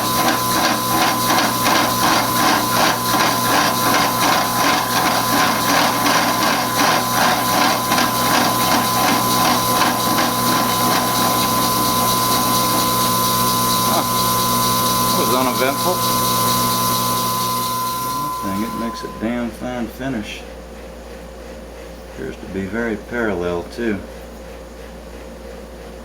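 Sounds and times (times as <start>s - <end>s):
slitting saw machining steel: 0.0s - 19.3s.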